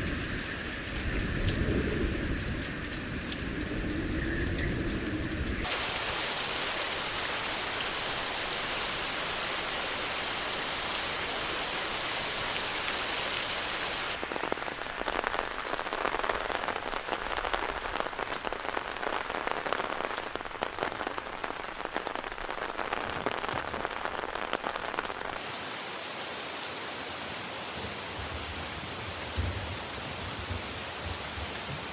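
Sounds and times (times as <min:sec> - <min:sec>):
raindrops pattering: 0:00.0 - 0:25.4
rain hissing: 0:00.0 - 0:28.6.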